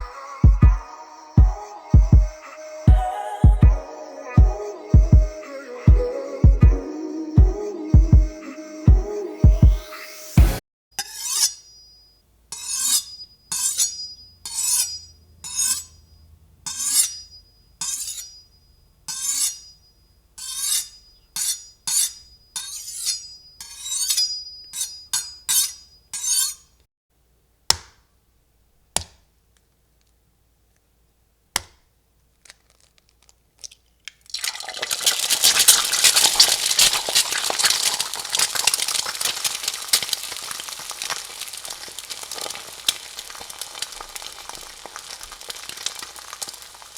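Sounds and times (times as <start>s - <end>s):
food frying sizzle: 33.6s - 46.9s.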